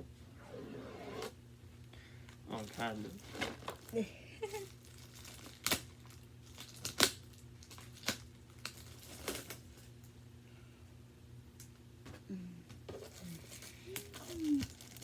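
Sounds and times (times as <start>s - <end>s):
packaging tearing and crinkling: 2.6s - 9.9s, 13.0s - 15.0s.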